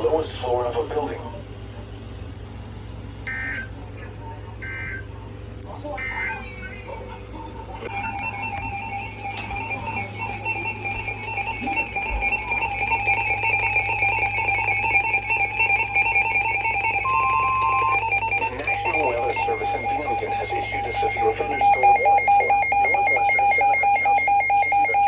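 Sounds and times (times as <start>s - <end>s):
two-tone alarm: 3.2s - 5.2s, 7.9s - 25.0s.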